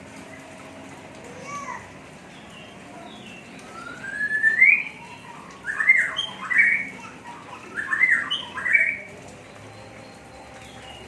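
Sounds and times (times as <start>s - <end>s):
bird singing: 2.3s - 11.0s.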